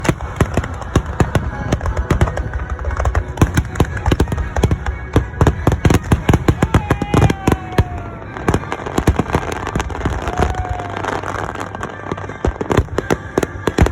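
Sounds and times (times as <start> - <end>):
fireworks bursting: 0.0 - 13.9
firework whistle falling in pitch: 3.6 - 13.9.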